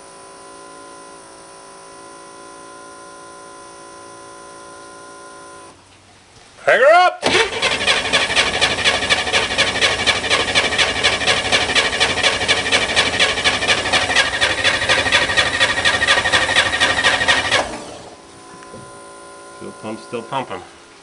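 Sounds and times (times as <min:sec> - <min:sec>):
electric fuel pump humming: 0:00.0 - 0:05.8, 0:07.2 - 0:21.0
starter cranking engine: 0:07.2 - 0:18.1.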